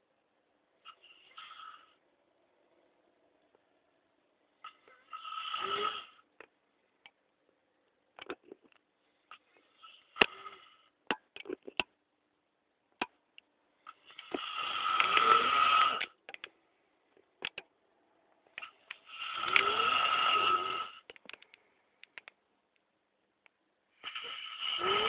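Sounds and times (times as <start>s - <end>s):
man snoring: 4.6s - 6.3s, 9.7s - 10.9s, 13.9s - 16.2s, 19.0s - 21.1s, 24.0s - 25.0s.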